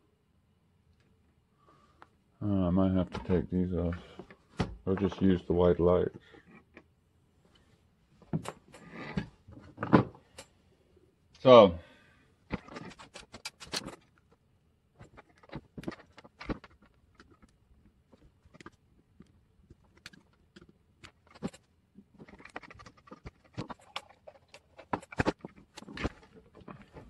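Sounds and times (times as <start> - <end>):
plastic parts clicking: 12.5 - 14.4, 15.0 - 27.0.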